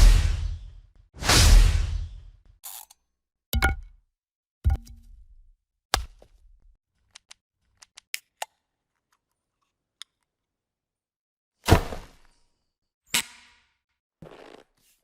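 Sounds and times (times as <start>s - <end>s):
sharp transition hits: 0.0s - 2.2s.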